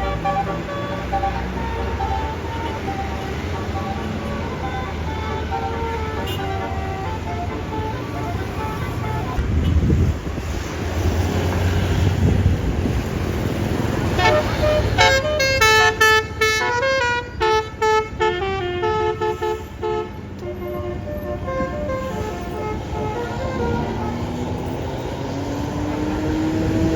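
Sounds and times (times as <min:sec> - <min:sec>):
multi-note bus horn melody: 0:00.0 - 0:09.9, 0:14.0 - 0:25.2
vehicle engine rumble: 0:00.0 - 0:26.9.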